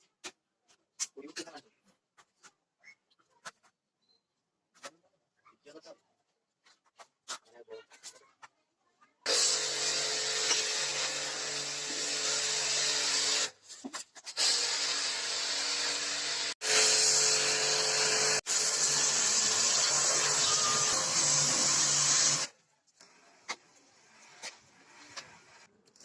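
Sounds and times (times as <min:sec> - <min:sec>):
power tool motor whine: 0:09.3 - 0:13.5, 0:14.4 - 0:22.5.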